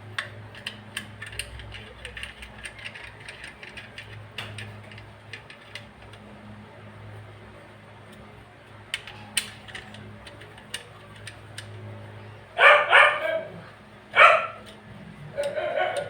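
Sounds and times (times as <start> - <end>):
dog barking: 12.6 - 14.6, 15.4 - 16.0.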